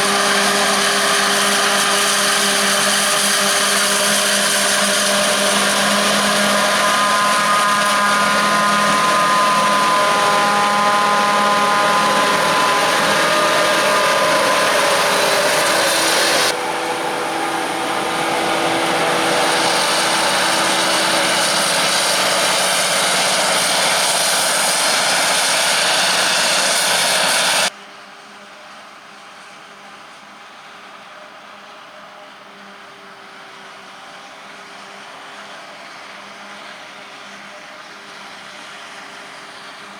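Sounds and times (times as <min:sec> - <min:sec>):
harvest machinery engine: 0:00.0 - 0:27.7
whining tones: 0:00.0 - 0:27.7.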